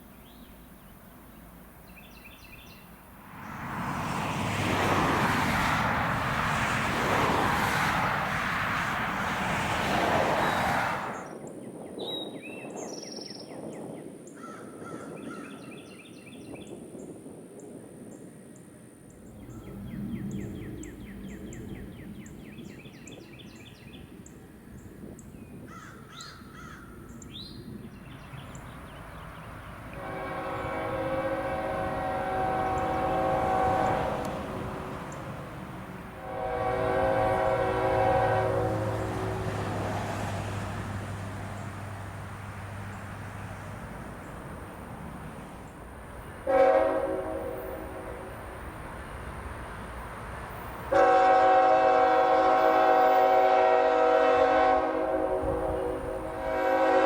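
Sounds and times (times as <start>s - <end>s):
birds chirping: 19.2s - 46.4s
locomotive air horn blasts: 29.8s - 35.3s, 36.0s - 40.4s, 46.4s - 48.4s, 50.9s - 57.0s.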